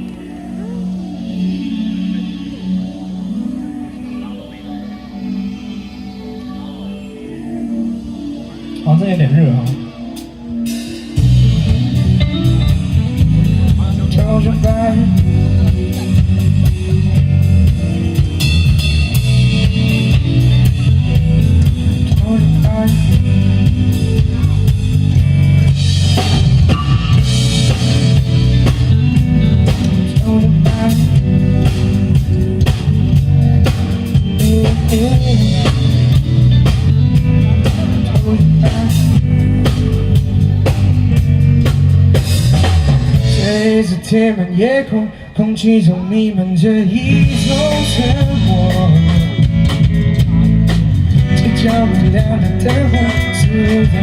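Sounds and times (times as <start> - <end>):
bass: 0.0 - 54.0
guitar: 0.0 - 54.0
drum kit: 8.4 - 44.3, 46.8 - 54.0.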